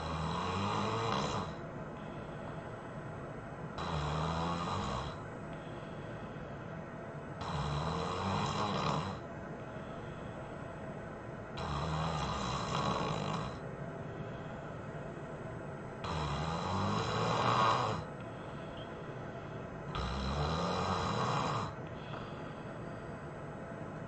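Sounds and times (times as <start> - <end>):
person snoring loudly: 0.0 - 1.6, 3.8 - 5.2, 7.4 - 9.2, 11.6 - 13.6, 16.0 - 18.1, 19.9 - 21.8.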